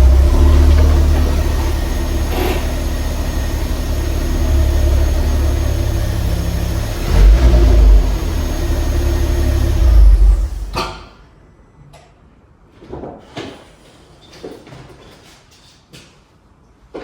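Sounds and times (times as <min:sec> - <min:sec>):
car engine revving: 0:00.0 - 0:10.8.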